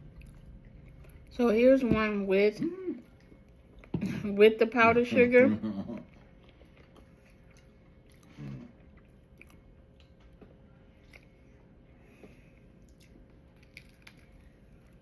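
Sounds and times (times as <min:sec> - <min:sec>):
faint chewing: 0:00.1 - 0:01.4, 0:06.0 - 0:15.0.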